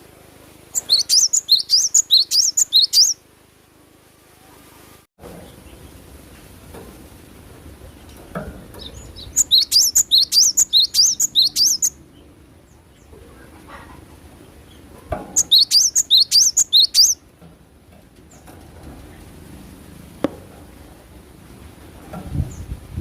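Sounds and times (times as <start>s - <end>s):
bird singing high notes: 0.7s - 3.2s, 8.8s - 12.0s, 15.4s - 17.2s.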